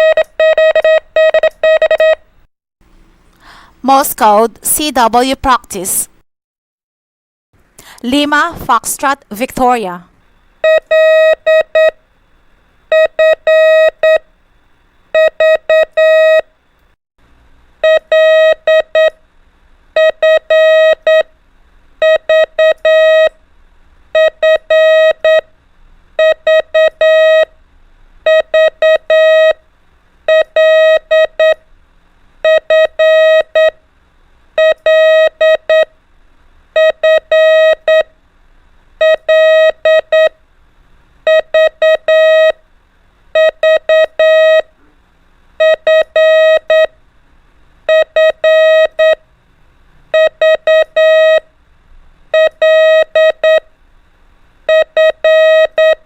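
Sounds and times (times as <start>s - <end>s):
morse code beeps: 0.0s - 2.3s, 10.6s - 12.0s, 12.9s - 14.2s, 15.2s - 16.4s, 17.8s - 19.2s, 20.0s - 21.3s, 22.0s - 23.3s, 24.2s - 25.4s, 26.2s - 27.5s, 28.3s - 29.6s, 30.3s - 31.6s, 32.4s - 33.8s, 34.6s - 35.9s, 36.8s - 38.1s, 39.0s - 40.4s, 41.3s - 42.6s, 43.4s - 44.7s, 45.6s - 46.9s, 47.9s - 49.2s, 50.1s - 51.5s, 52.3s - 53.6s, 54.7s - 56.0s.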